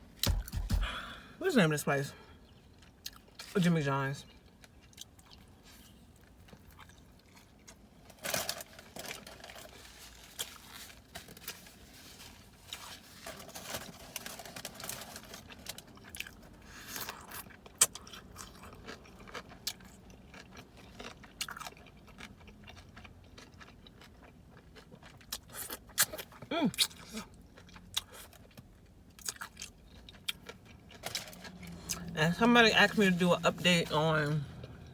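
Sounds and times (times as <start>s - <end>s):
person chewing food: 0.1s - 1.2s, 2.4s - 3.5s, 4.4s - 7.9s, 15.5s - 33.2s.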